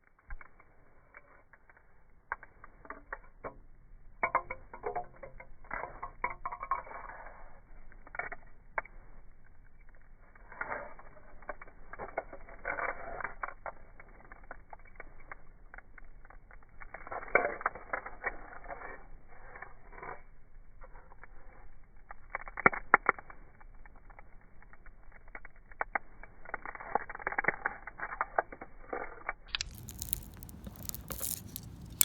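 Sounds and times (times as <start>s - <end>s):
faint clicks taps and scratching: 4.2s - 7.2s, 22.1s - 32.0s.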